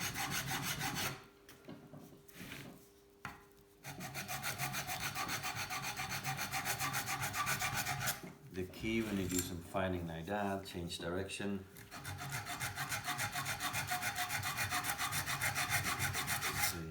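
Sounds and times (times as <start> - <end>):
hand file rasping on metal: 0.0 - 1.2, 3.8 - 8.3, 11.8 - 16.9.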